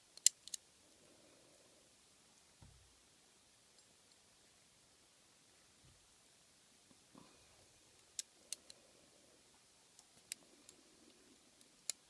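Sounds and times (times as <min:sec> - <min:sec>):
small metal clicks: 0:00.1 - 0:00.6.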